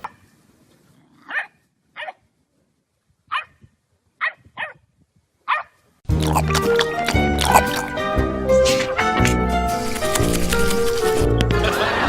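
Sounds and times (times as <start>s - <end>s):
dog barking: 1.3s - 2.2s, 3.3s - 3.6s, 4.2s - 4.8s, 5.5s - 5.8s.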